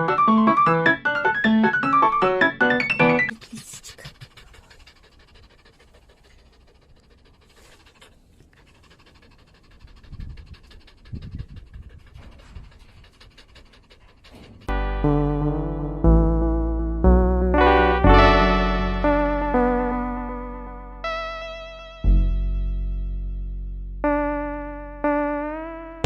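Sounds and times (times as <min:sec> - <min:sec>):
dog panting: 0:02.7 - 0:15.4.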